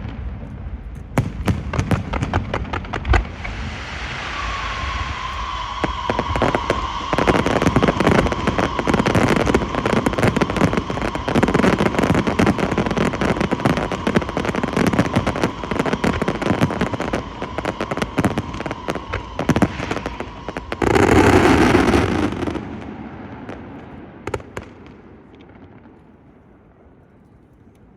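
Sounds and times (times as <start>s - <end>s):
loud rushing firework burst: 0.0s - 25.2s
fireworks crackling and banging: 0.0s - 26.7s
steady high tone: 3.3s - 21.8s.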